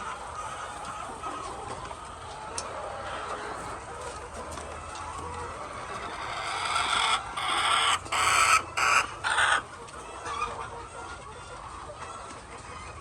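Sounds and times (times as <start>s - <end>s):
chickens clucking: 0.0s - 13.0s
chicken squawking harshly: 5.9s - 9.6s.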